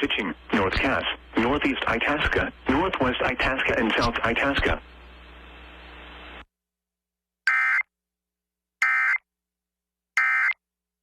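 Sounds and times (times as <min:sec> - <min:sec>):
faint broadcast hiss: 0:00.0 - 0:06.5.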